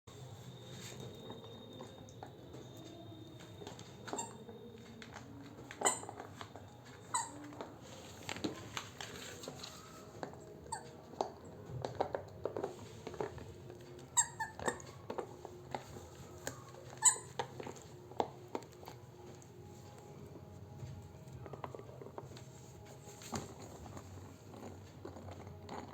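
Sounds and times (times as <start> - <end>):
squeaky dog toy squeaking: 5.7 - 6.4, 7.0 - 7.8, 14.1 - 15.2, 16.5 - 17.8.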